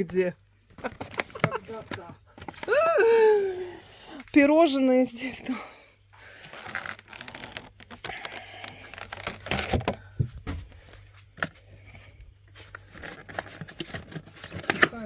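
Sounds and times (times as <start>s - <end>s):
plastic bags and packaging rustling: 0.0s - 15.0s
items knocking in refrigerator: 9.5s - 10.8s.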